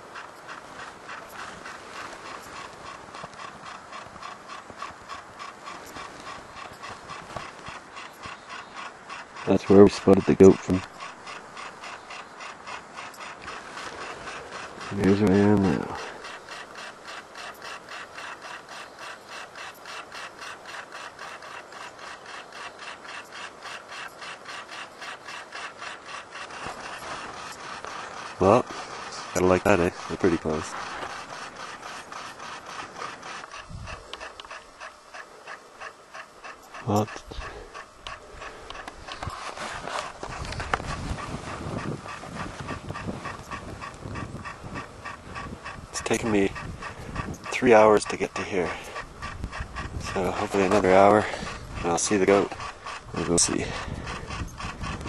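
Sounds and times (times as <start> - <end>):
camcorder zoom motor ratcheting: 0.0 - 55.0
person panting heavily: 36.7 - 47.4, 48.6 - 55.0.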